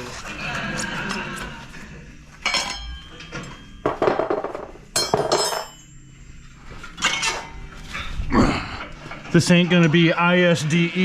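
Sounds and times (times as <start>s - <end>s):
metal tools striking a wheel: 2.4s - 6.1s.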